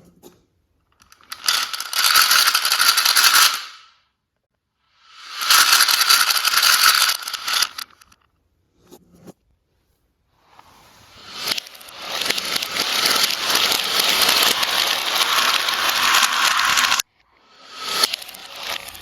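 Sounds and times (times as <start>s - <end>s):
marbles rolling down plastic track: 1.0s - 3.8s, 5.1s - 8.0s, 11.0s - 19.0s.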